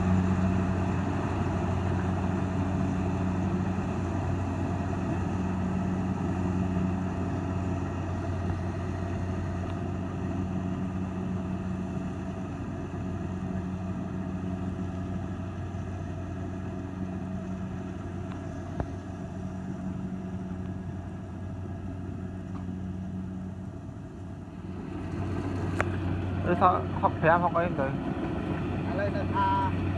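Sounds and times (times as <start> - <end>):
diesel engine droning: 0.0 - 29.9.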